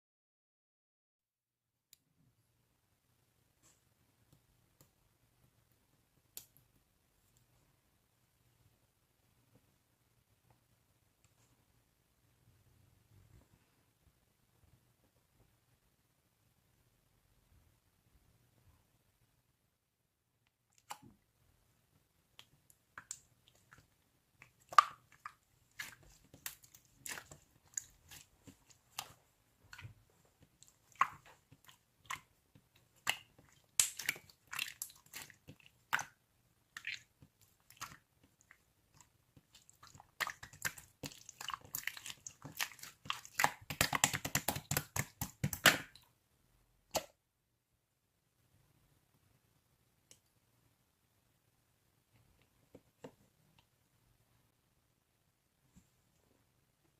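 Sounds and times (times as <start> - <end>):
slime squelching and clicking: 20.5 - 21.2, 22.3 - 46.0.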